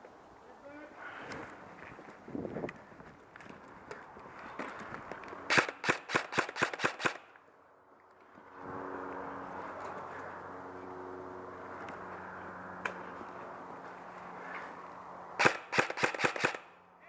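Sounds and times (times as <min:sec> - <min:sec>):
airsoft gun shots: 0:05.5 - 0:07.3, 0:15.4 - 0:16.7.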